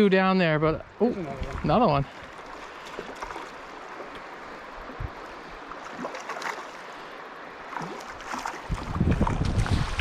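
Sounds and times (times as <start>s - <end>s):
river water flowing: 0.0s - 10.0s.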